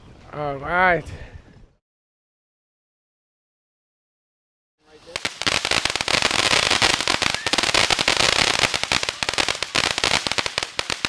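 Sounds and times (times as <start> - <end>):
firecrackers popping: 4.9 - 11.0.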